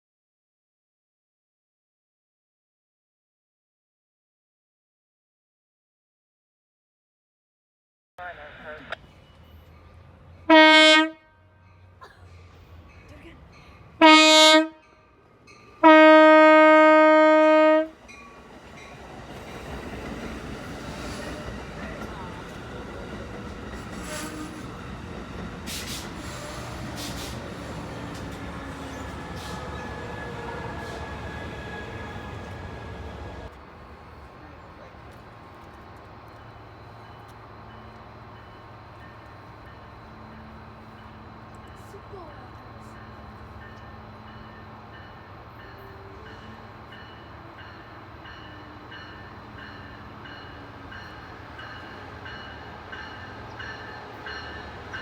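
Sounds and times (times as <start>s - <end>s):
train approaching: 8.2s - 55.0s
truck air horn blast: 10.5s - 11.5s, 14.0s - 14.8s, 15.8s - 17.9s.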